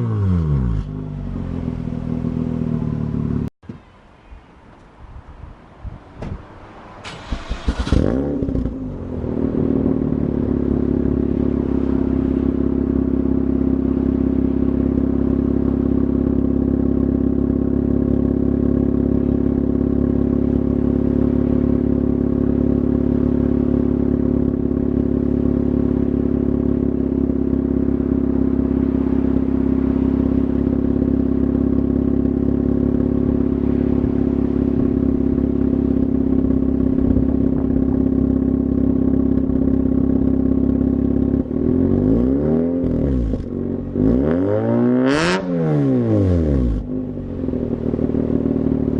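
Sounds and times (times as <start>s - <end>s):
rotary engine starting and idling: 7.0s - 8.9s.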